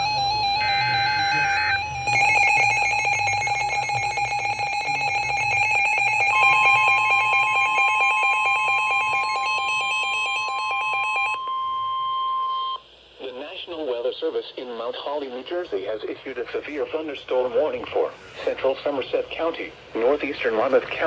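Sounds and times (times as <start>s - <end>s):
buzzy pulsing alarm tone: 0.0s - 12.8s
steady high pure tone: 0.0s - 17.0s.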